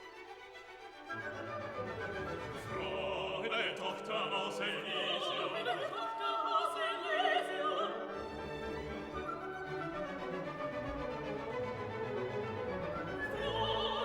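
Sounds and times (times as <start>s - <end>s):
orchestra playing: 0.0s - 4.2s, 8.0s - 14.0s
opera singer with vibrato: 1.7s - 8.2s, 13.0s - 14.0s.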